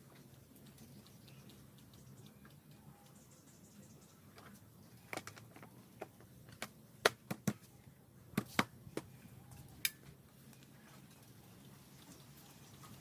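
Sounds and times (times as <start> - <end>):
sharp clicks and knocks: 4.3 - 7.7.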